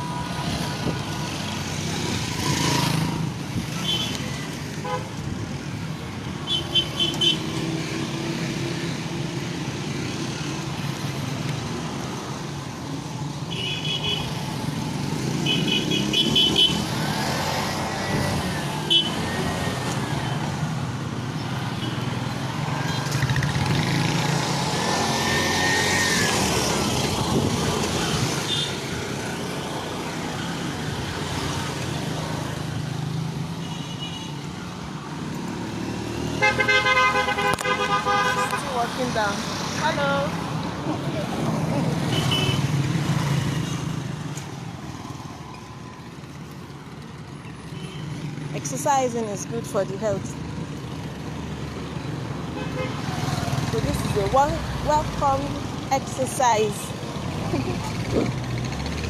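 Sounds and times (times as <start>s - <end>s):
vehicles passing: 0.0s - 59.0s.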